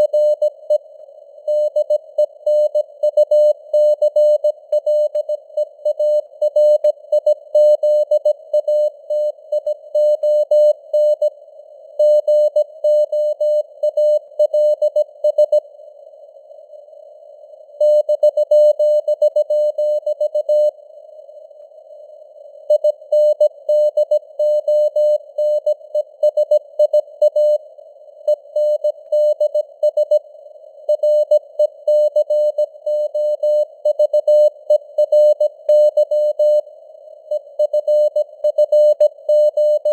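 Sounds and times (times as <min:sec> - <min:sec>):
morse code beeps: 0:37.7 - 0:39.9.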